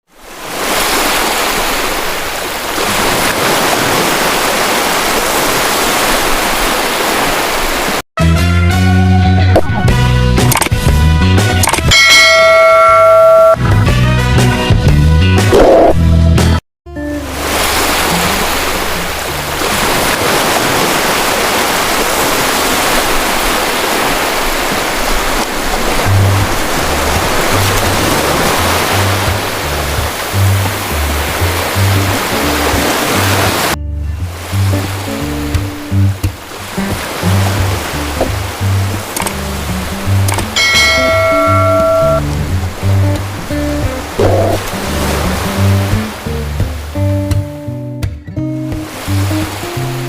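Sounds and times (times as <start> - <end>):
sea waves breaking on shore: 0.0 - 8.0, 17.1 - 47.2, 48.6 - 50.0
music: 8.2 - 12.4, 13.6 - 19.7, 26.1 - 50.0.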